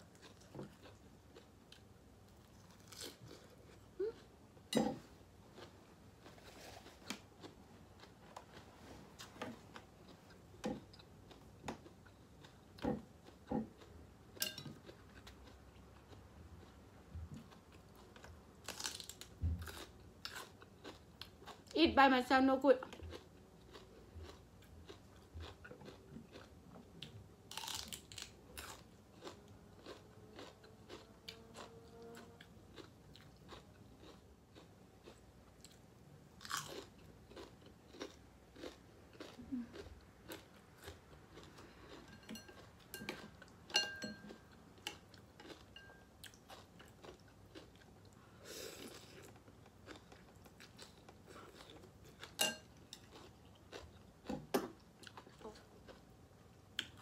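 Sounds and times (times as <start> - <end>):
wet chewing sounds: 22.9 - 35.8, 36.4 - 56.1.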